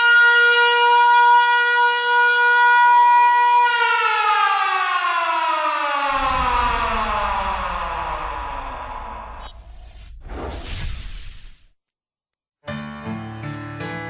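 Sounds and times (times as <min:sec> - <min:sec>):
siren-like tone winding down: 0:05.2 - 0:10.0
low rumble: 0:06.1 - 0:10.1.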